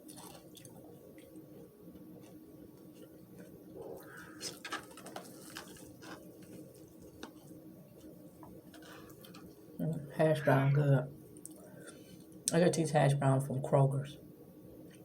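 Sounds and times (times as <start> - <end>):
faint hum: 0.0 - 15.0.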